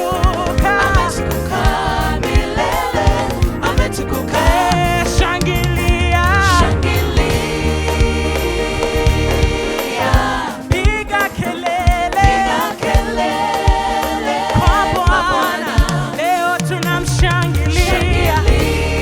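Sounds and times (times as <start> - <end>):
bass: 0.0 - 11.0, 16.9 - 19.0
drum beats: 0.0 - 19.0
keyboard chords: 0.0 - 19.0
singers and choir: 0.0 - 19.0.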